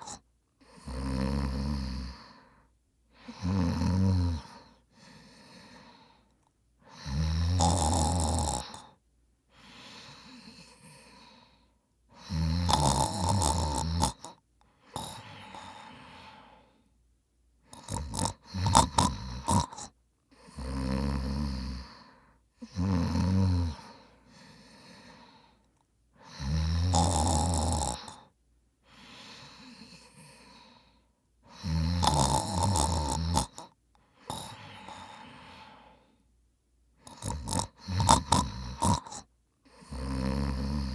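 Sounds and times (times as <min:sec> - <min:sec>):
man snoring: 0:00.0 - 0:02.5, 0:03.2 - 0:06.1, 0:06.9 - 0:09.0, 0:09.6 - 0:11.5, 0:12.2 - 0:16.6, 0:17.7 - 0:25.4, 0:26.2 - 0:28.3, 0:29.0 - 0:30.9, 0:31.5 - 0:36.1, 0:37.0 - 0:40.9
sharp snorts and clicks: 0:17.7 - 0:19.9, 0:37.1 - 0:39.3.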